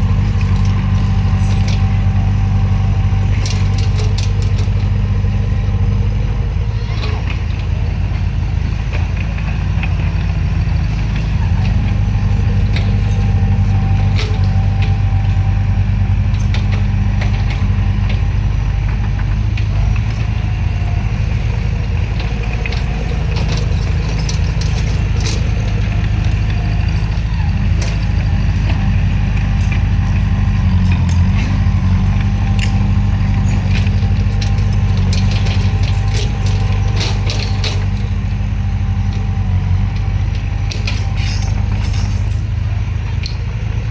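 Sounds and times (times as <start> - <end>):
bulldozer diesel engine drone: 0.0 - 43.9
metallic clicks and clanks: 23.4 - 38.2, 40.7 - 42.5.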